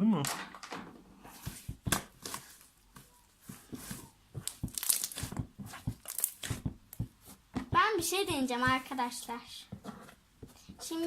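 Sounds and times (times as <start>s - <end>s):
slime clicking and popping: 4.4s - 5.4s, 6.0s - 7.0s.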